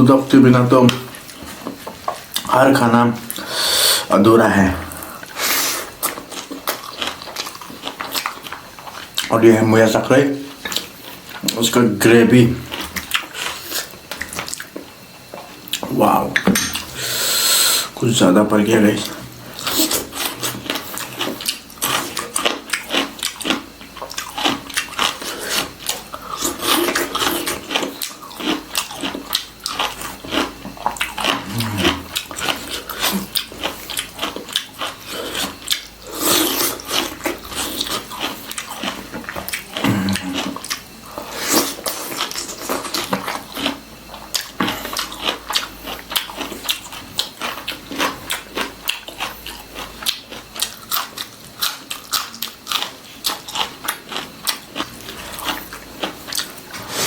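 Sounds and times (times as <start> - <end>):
chewing and mouth smacks: 6.0 - 9.3, 12.7 - 17.0, 19.0 - 57.0.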